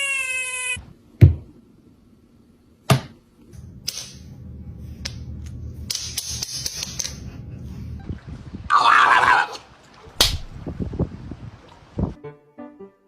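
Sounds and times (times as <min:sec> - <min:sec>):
low rumble: 0:03.6 - 0:05.9.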